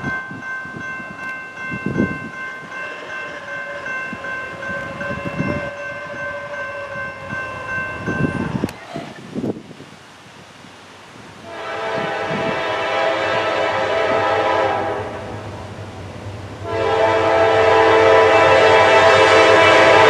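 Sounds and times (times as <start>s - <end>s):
train rumbling: 0.0s - 20.0s
locomotive air horn blast: 2.8s - 7.7s, 11.4s - 15.5s, 16.6s - 20.0s.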